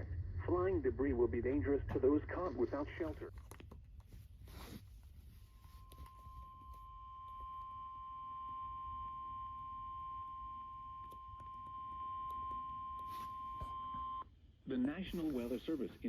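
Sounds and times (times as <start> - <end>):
faint radio static: 0.0 - 3.4, 4.6 - 16.0
steady high alarm tone: 5.4 - 14.2.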